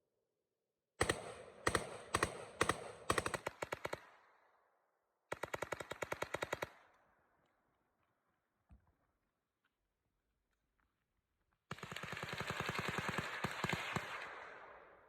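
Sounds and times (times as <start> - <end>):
rifle rapid fire shots: 1.0 - 4.2, 5.3 - 6.9, 11.7 - 14.8.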